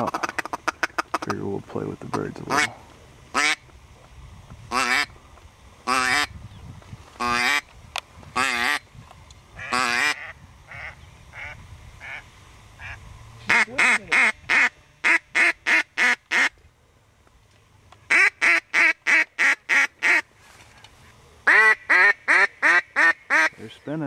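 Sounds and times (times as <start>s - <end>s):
duck call quacks: 0.0s - 1.3s, 2.5s - 2.7s, 3.3s - 3.6s, 4.7s - 5.1s, 5.9s - 6.3s, 7.2s - 7.6s, 9.6s - 12.2s, 12.8s - 16.5s, 18.1s - 20.2s, 21.5s - 23.6s.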